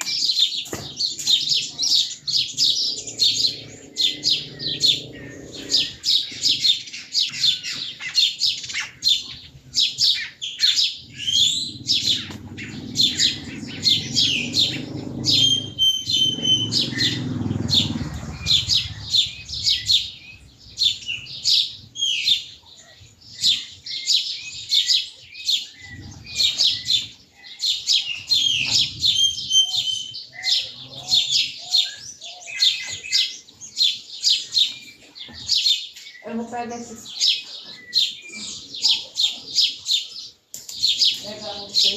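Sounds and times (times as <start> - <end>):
songbirds chirping: 0.0 - 41.9
low rumble: 2.3 - 6.2, 11.4 - 20.9.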